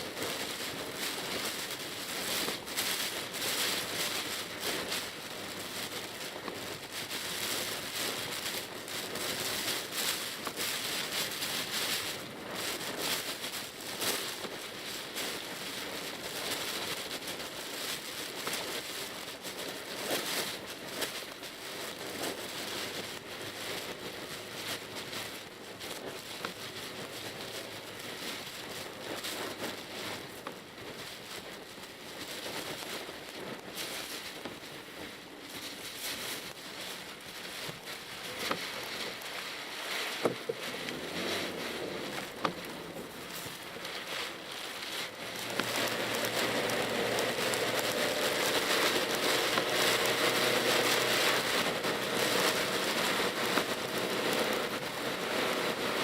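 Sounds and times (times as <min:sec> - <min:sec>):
rain spattering on a car: 0:00.0 - 0:56.0
faint vehicle noise: 0:32.1 - 0:56.0.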